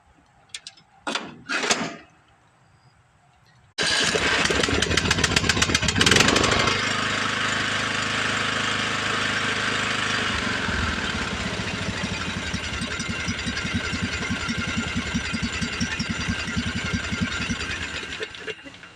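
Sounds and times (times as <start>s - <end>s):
engine cranking on starter: 3.8s - 7.4s, 9.8s - 18.9s
lawn tractor engine running: 3.8s - 18.9s.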